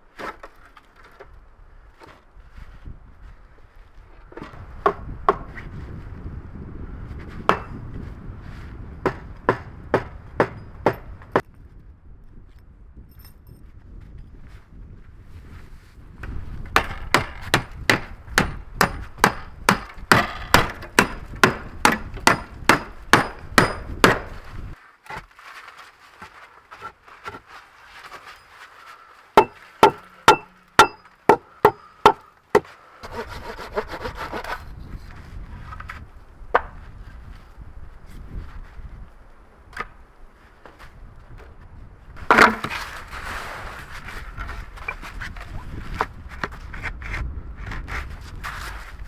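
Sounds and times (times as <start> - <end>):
hammer blows on wood: 29.4 - 33.2.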